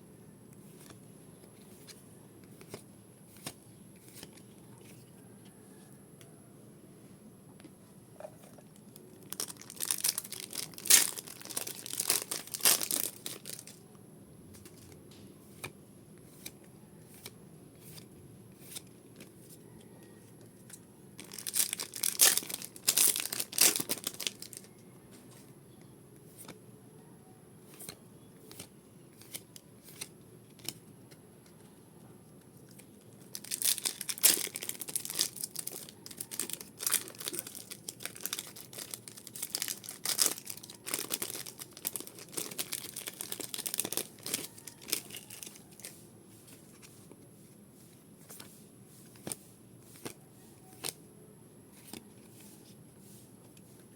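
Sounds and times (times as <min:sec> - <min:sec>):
foil wrappers tearing and crinkling: 0:09.2 - 0:13.8, 0:21.2 - 0:24.7, 0:33.2 - 0:45.9.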